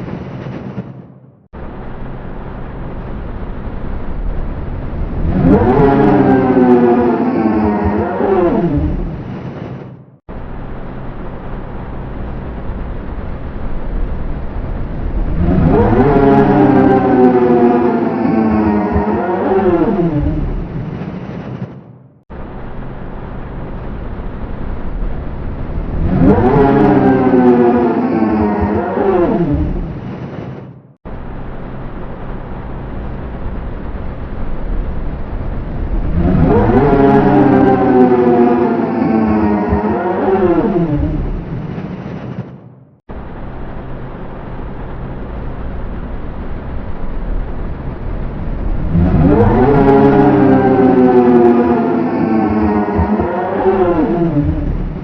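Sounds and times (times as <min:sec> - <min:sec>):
noisy humming rumble: 0:00.0 - 0:55.0
wavering distorted pitched sound: 0:42.6 - 0:55.0.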